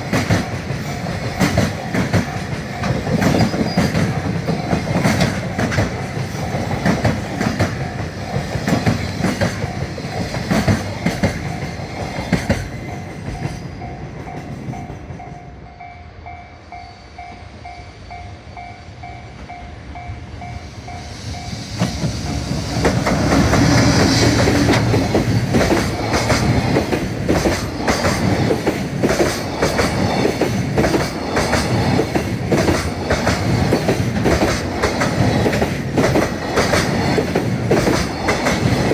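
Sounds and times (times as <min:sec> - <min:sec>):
wheels clacking over rail joints: 0:00.0 - 0:15.3, 0:21.9 - 0:38.9
train rumbling past: 0:00.0 - 0:38.9
crossing warning bell ringing: 0:00.8 - 0:08.7, 0:12.8 - 0:21.9.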